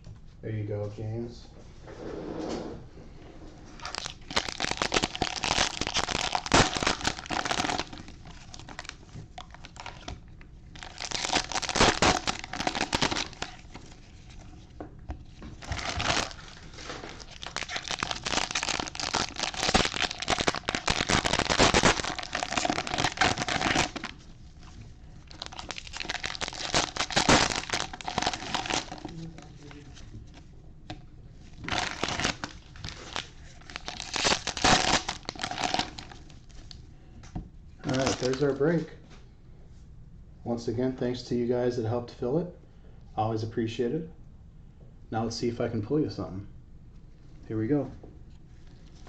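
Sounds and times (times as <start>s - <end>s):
plastic wrapping crinkling and tearing: 3.8s - 30.5s, 31.4s - 36.8s, 37.8s - 38.8s.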